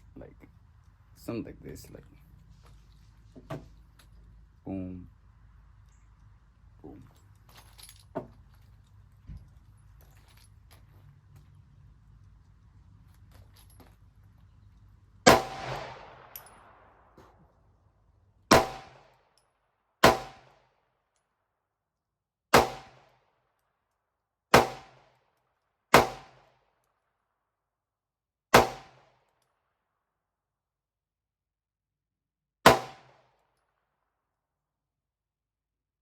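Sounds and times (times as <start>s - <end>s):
single gunshots: 15.3s - 16.9s, 18.5s - 19.1s, 20.0s - 20.5s, 22.6s - 23.0s, 24.5s - 25.0s, 26.0s - 26.4s, 28.5s - 29.1s, 32.7s - 33.2s.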